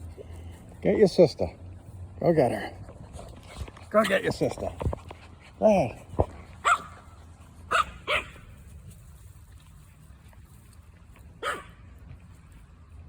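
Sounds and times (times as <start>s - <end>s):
small dog barking: 6.6s - 7.0s, 7.7s - 8.4s, 11.4s - 11.8s.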